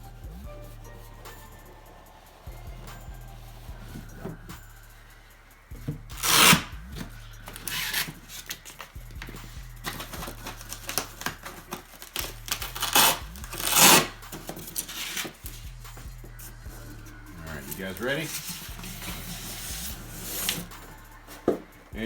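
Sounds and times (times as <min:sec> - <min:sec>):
packaging tearing and rubbing: 0:06.1 - 0:15.4, 0:17.7 - 0:20.8.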